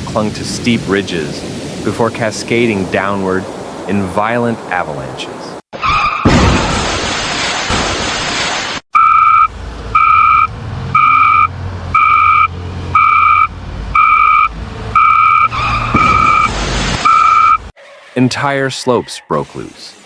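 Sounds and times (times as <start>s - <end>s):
electronic warning beeps: 9.0s - 17.7s
loud rushing noise: 9.5s - 17.7s
low engine rumble: 9.5s - 17.7s.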